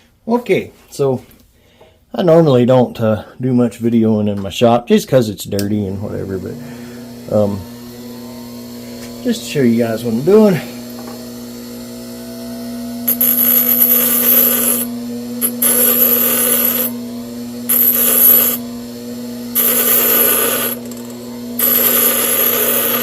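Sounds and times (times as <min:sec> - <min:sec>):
power tool motor hum: 0:06.0 - 0:23.0
metal part grinding: 0:13.1 - 0:17.0, 0:17.7 - 0:18.6, 0:19.6 - 0:23.0.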